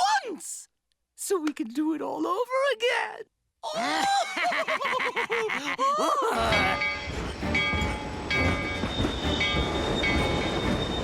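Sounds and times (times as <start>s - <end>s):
cartoon train rumbling: 6.3s - 11.0s
train whistle: 7.4s - 11.0s.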